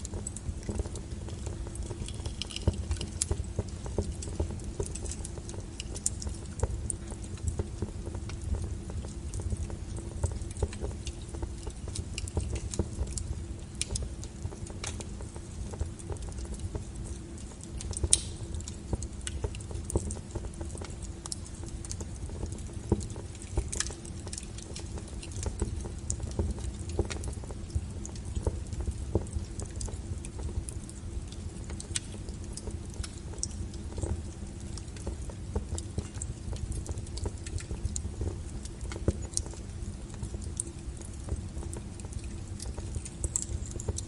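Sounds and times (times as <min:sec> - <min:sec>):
fire crackles and pops: 0:00.0 - 0:44.0
wood fire rumbling: 0:00.0 - 0:44.0.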